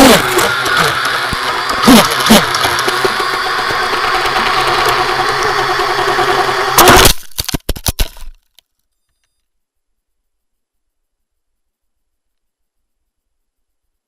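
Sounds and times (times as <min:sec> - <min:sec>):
drone propellers whining: 0:00.0 - 0:07.1.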